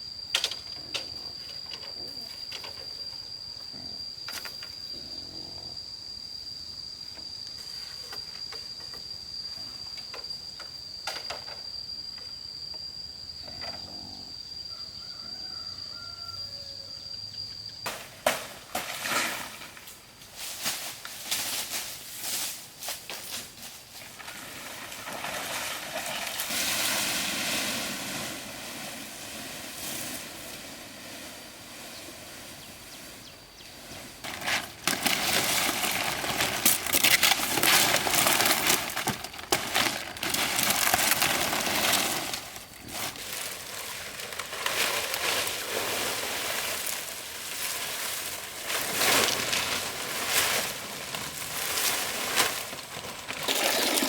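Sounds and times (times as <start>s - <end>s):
dry material rustling and crackling: 34.0s - 54.0s.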